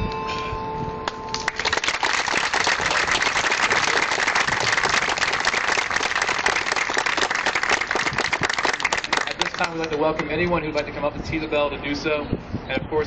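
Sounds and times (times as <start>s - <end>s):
crowd applauding: 1.3s - 10.0s.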